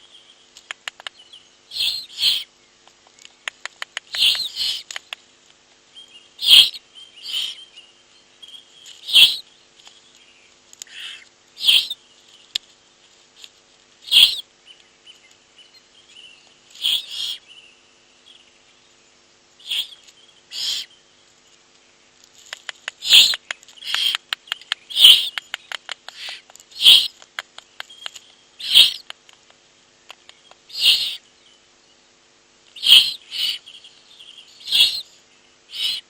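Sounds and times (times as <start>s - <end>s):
owlets begging calls: 1.7s - 2.5s, 4.0s - 5.0s, 6.4s - 7.7s, 9.0s - 9.4s, 10.9s - 12.0s, 14.0s - 14.5s, 16.8s - 17.5s, 19.6s - 20.9s, 22.8s - 27.2s, 27.8s - 29.2s, 30.6s - 31.2s, 32.7s - 36.0s
rapid clicks: 22.4s - 30.6s.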